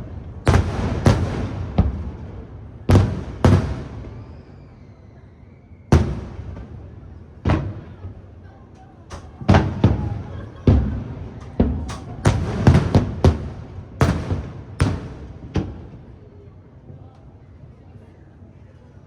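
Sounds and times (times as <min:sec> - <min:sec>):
firework shells booming: 0:00.0 - 0:04.4, 0:05.9 - 0:08.2, 0:09.1 - 0:16.1.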